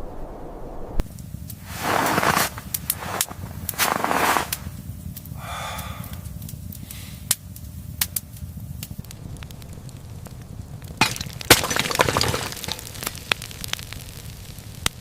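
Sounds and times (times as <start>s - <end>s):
fire crackling in a stove: 1.0s - 15.0s
short scrape: 1.6s - 4.7s.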